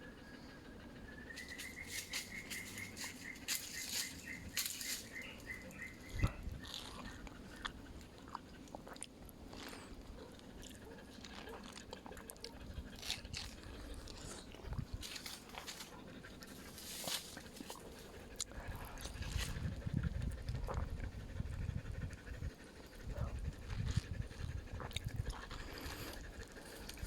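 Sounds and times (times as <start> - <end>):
mango being bitten and chewed: 1.4 - 27.0.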